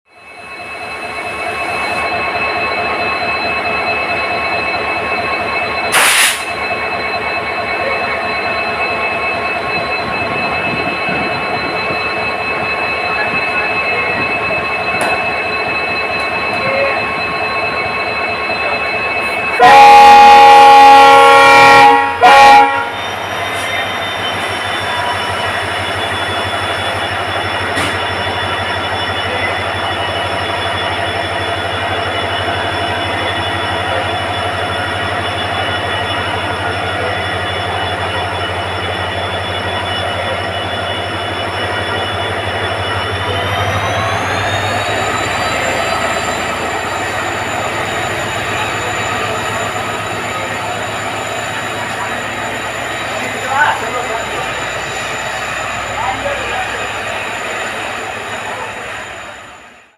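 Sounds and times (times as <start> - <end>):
diesel locomotive engine humming: 0.2 - 59.9
train running: 0.2 - 59.9
locomotive horn blasts: 19.5 - 23.0
high-pitched whining: 23.0 - 59.6.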